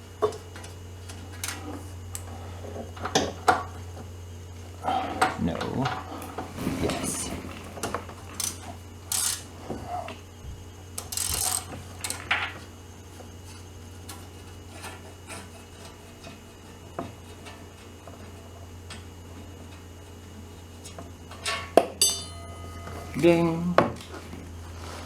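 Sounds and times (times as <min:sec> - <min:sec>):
steady low hum: 0:00.0 - 0:25.0
wrench scraping and clicking on metal: 0:08.4 - 0:09.5
sharp metallic clink: 0:22.0 - 0:23.5.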